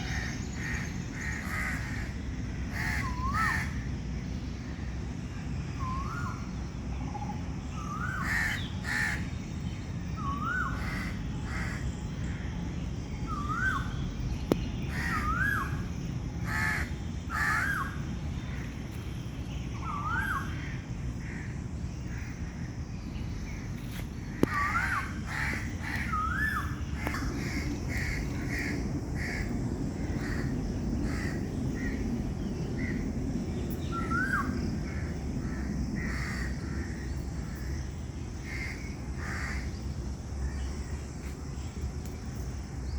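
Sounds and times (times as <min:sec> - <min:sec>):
low background rumble: 0:00.0 - 0:42.9
crows cawing: 0:02.7 - 0:03.7, 0:08.2 - 0:09.2, 0:16.5 - 0:17.9, 0:24.4 - 0:32.0, 0:34.3 - 0:37.0, 0:38.4 - 0:39.7.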